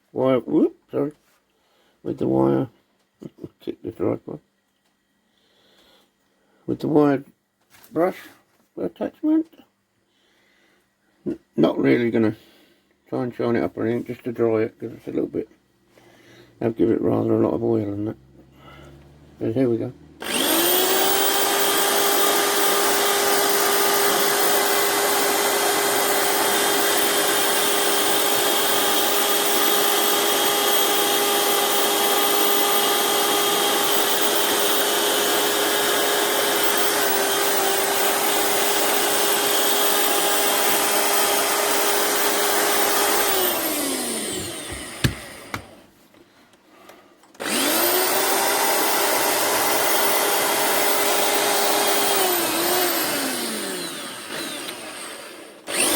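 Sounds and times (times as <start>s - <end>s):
power tool wire brush whining: 18.3s - 45.9s, 47.4s - 55.9s.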